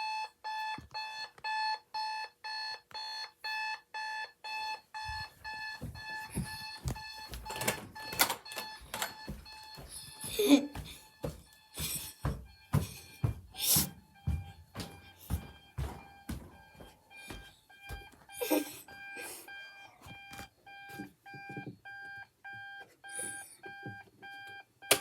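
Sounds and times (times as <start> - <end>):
alarm clock beeping: 0.0 - 25.0
knocks and thumps: 5.8 - 16.8.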